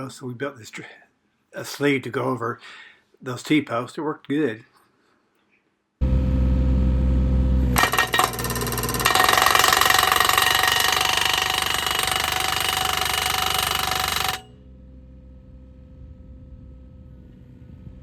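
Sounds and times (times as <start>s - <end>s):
excavator engine running: 6.0s - 18.0s
post driver hammering: 7.8s - 14.5s.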